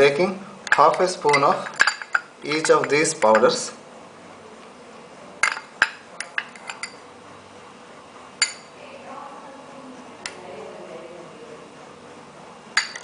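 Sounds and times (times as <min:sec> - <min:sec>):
spoon clinking against a dish: 0:00.7 - 0:03.6, 0:05.4 - 0:07.0, 0:08.4 - 0:08.8, 0:12.8 - 0:13.0.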